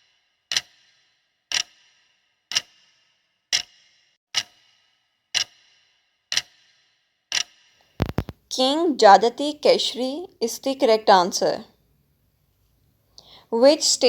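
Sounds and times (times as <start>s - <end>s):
clock ticking: 1.5s - 1.7s, 5.4s - 5.6s, 6.3s - 6.6s, 7.3s - 11.6s.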